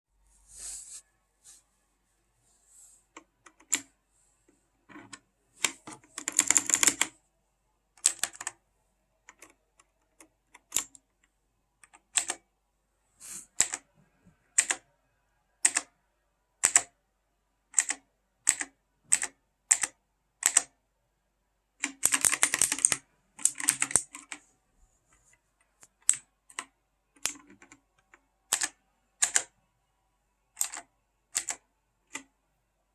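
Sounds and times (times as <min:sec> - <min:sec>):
mechanical keyboard clicks: 0:05.6 - 0:07.1, 0:08.0 - 0:08.5, 0:11.8 - 0:12.4, 0:16.6 - 0:16.9, 0:17.8 - 0:20.7, 0:21.8 - 0:24.4, 0:26.0 - 0:27.8, 0:28.5 - 0:29.5, 0:30.6 - 0:32.3.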